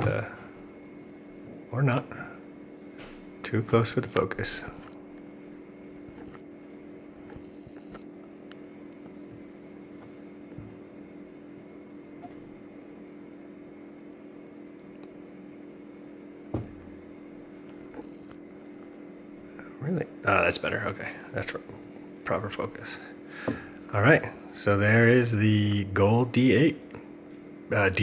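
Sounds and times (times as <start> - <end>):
low hum of fan or appliance: 0.0 - 28.0
short thump: 16.5 - 17.0.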